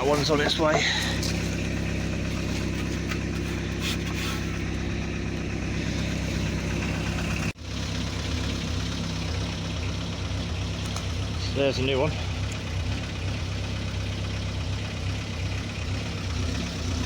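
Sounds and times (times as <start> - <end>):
engine idling through leaking exhaust: 0.0 - 17.0.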